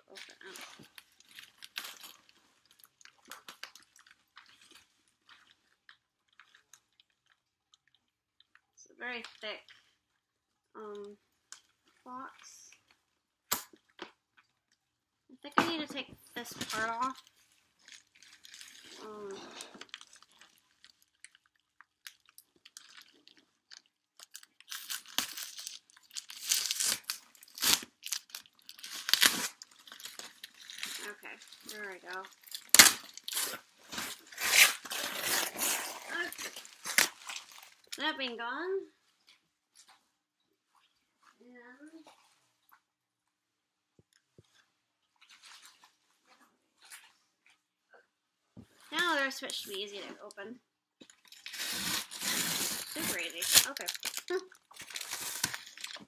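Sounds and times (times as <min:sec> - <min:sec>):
small clicks and rustles: 0:00.0 - 0:10.3, 0:16.2 - 0:26.5, 0:44.0 - 0:47.8
cardboard tearing: 0:24.7 - 0:37.8, 0:51.4 - 0:56.0.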